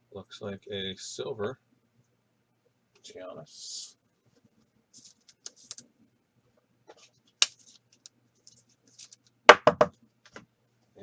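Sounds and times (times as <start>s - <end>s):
cards scraping and clicking: 5.0s - 5.8s, 6.9s - 9.2s.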